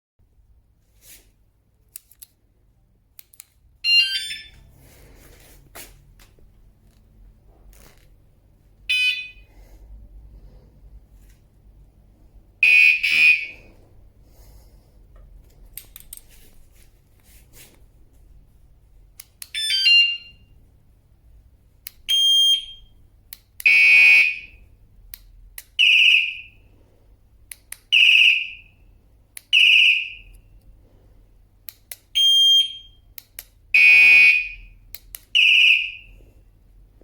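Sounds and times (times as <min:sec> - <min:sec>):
bike alarm siren beeps: 0:03.8 - 0:04.6, 0:08.9 - 0:09.5, 0:12.6 - 0:13.5, 0:19.5 - 0:20.5, 0:22.1 - 0:22.9, 0:23.7 - 0:24.6, 0:25.8 - 0:26.6, 0:27.9 - 0:28.7, 0:29.5 - 0:30.4, 0:32.2 - 0:33.0, 0:33.8 - 0:34.8, 0:35.4 - 0:36.1.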